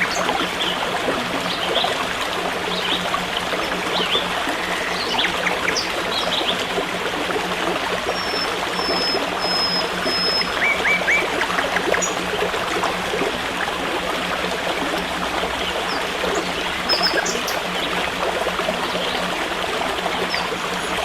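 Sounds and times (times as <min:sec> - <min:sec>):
small birds chirping: 0:00.0 - 0:00.8, 0:03.6 - 0:06.6, 0:08.1 - 0:12.2, 0:15.9 - 0:18.0
forest stream running: 0:00.0 - 0:21.0.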